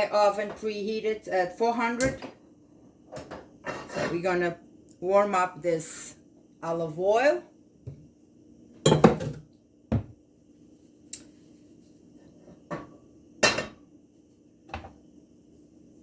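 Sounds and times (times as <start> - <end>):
pots and pans clattering: 3.1 - 4.2, 8.8 - 9.4, 12.6 - 13.8.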